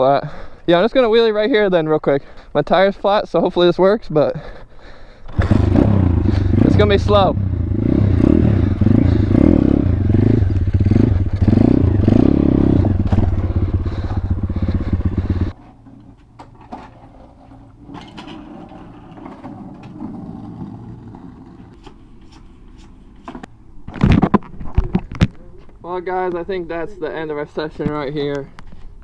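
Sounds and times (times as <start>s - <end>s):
motorbike engine revving: 5.3s - 15.6s.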